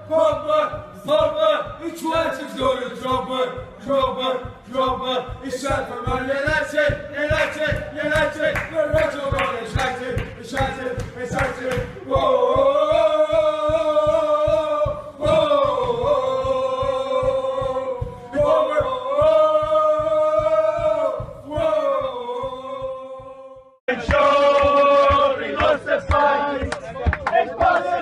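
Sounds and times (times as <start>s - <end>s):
low drum thumps: 0.0s - 23.8s
stadium crowd chanting: 0.0s - 28.0s.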